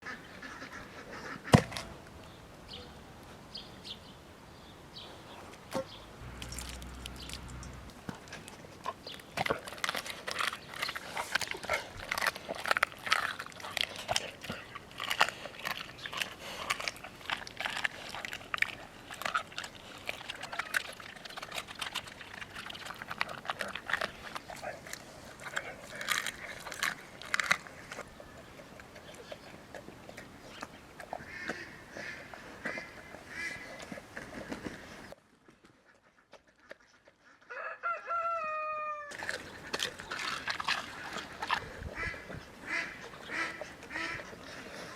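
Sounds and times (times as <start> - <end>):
dog chewing and crunching: 5.7 - 33.2, 39.1 - 44.9.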